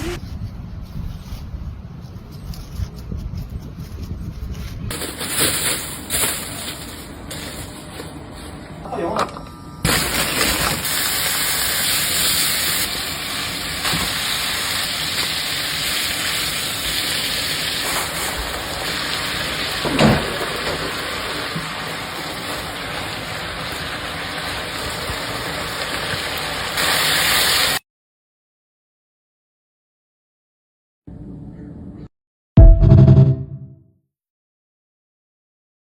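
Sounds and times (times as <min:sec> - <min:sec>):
food sizzling in a frying pan: 0:09.9 - 0:27.8.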